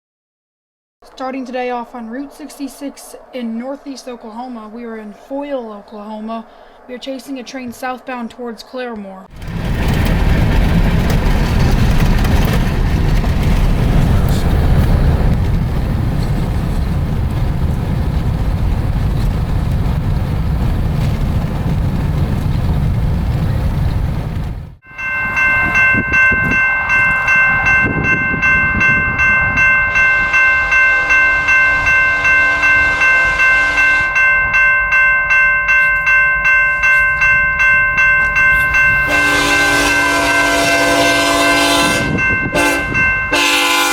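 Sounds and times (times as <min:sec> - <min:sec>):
low rumble: 0:09.3 - 0:39.3
railroad crossing bell ringing: 0:24.8 - 0:43.9
locomotive air horn: 0:30.0 - 0:34.3, 0:39.0 - 0:43.9.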